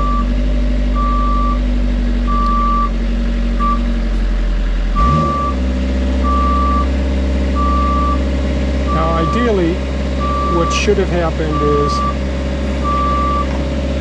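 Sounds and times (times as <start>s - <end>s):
lift motion alarm beeping: 0.0s - 0.3s, 1.0s - 1.6s, 2.3s - 3.0s, 3.6s - 3.8s, 5.0s - 5.6s, 6.2s - 6.9s, 7.6s - 8.2s, 8.9s - 9.6s, 10.2s - 10.9s, 11.5s - 12.2s, 12.8s - 13.5s.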